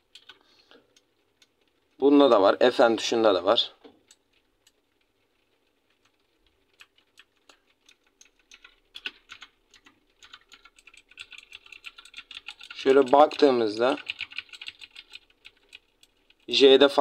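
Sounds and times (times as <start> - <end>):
clicky keyboard keys pressed: 0.1 - 0.4, 6.8 - 16.4.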